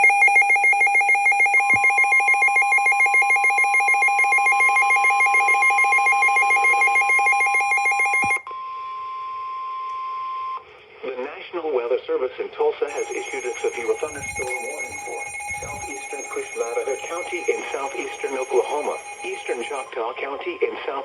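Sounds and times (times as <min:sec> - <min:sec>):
weather radio alarm beeping: 0:00.0 - 0:08.4, 0:12.9 - 0:21.0
alarm click: 0:12.9 - 0:20.0
steady warning tone: 0:12.9 - 0:21.0.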